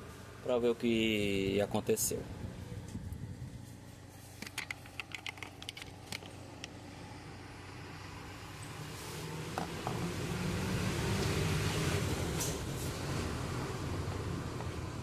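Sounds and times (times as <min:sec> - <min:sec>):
vehicle engine approaching: 0:06.4 - 0:15.0.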